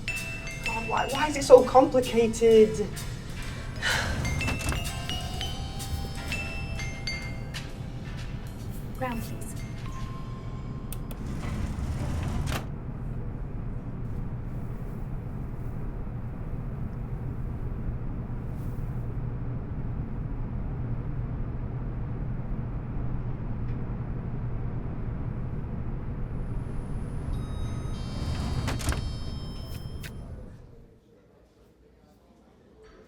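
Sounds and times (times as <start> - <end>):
lift car humming: 0.0 - 18.2, 23.6 - 30.8
high ringing tones: 4.5 - 8.1, 9.0 - 10.9, 26.4 - 30.7.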